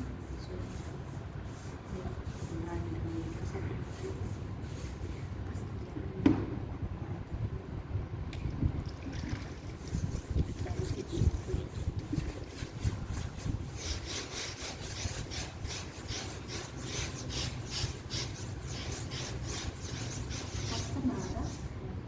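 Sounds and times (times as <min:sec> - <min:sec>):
steady low rumble: 0:05.2 - 0:14.0
rhythmic scraping strokes: 0:09.8 - 0:21.7.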